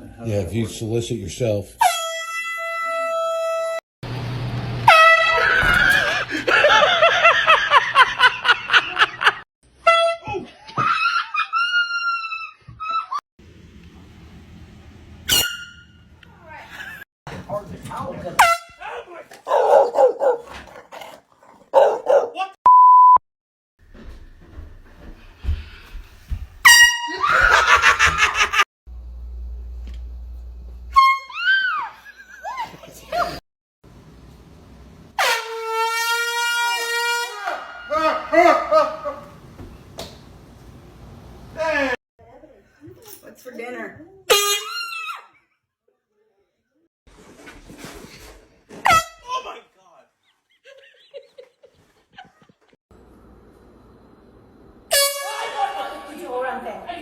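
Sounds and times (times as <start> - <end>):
air horn blasting: 26.6 - 27.2, 35.2 - 37.6, 54.9 - 56.2.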